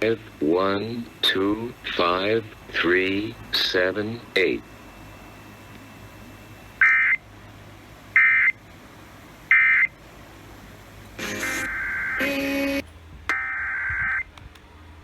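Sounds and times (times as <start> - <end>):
long data burst: 0.0 - 7.2, 11.2 - 14.2
two-tone data squawks: 6.8 - 7.2, 11.2 - 14.2.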